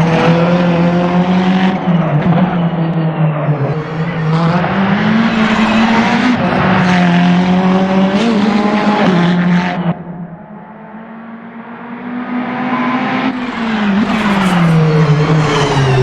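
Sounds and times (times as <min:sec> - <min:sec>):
race car engine running hard: 0:13.3 - 0:16.0.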